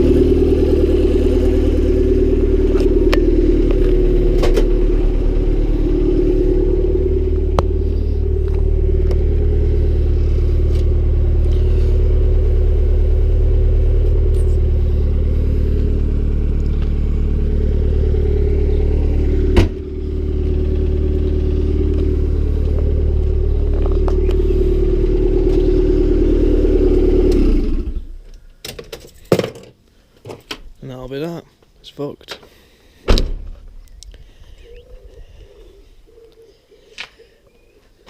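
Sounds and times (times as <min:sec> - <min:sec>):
car engine running: 0:00.0 - 0:28.3.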